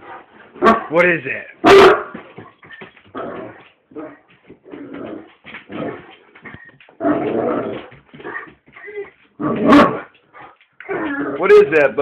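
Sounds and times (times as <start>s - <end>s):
dog whining and grumbling: 2.7s - 10.0s, 10.8s - 11.5s.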